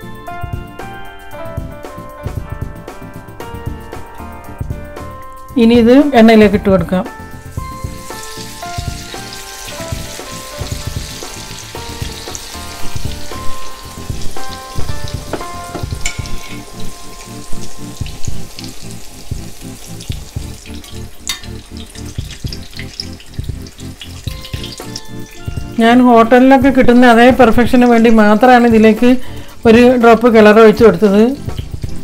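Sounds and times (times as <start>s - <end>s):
background music with beat: 0.0s - 27.7s, 30.8s - 32.0s
food deep-frying in oil: 7.3s - 26.8s, 29.3s - 32.0s.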